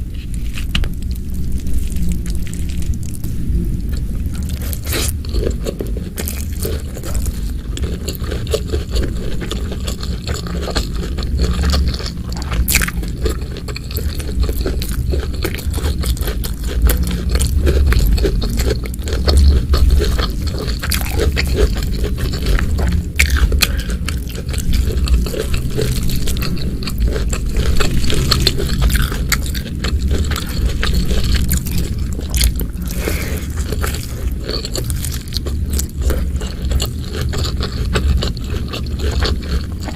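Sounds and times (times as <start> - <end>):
scrapes: 0.0 - 9.3, 23.5 - 35.6
crunchy chewing: 0.0 - 39.9.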